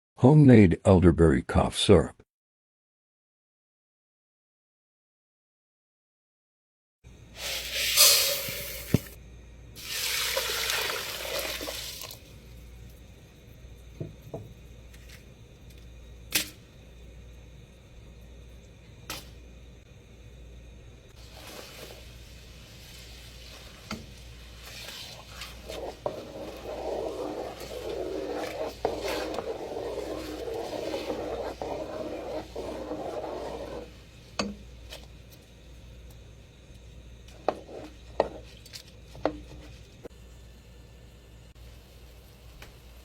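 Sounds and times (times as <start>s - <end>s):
utensils scraping a pot: 24.6s - 34.6s, 37.3s - 39.8s.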